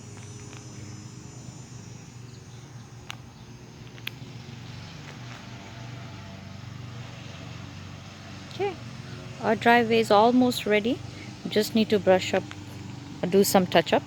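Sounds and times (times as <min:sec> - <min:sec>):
steady low hum: 0:00.0 - 0:14.0
sharp clicks: 0:03.0 - 0:04.2.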